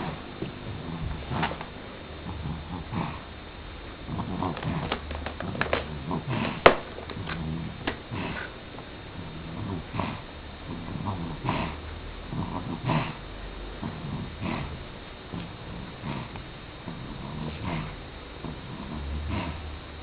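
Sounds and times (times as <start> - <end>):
baby snoring: 13.8 - 19.7.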